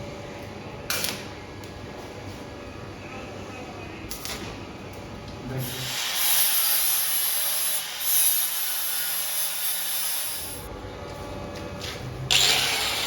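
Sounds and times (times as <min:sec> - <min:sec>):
harsh metalwork hiss: 0:05.6 - 0:10.7.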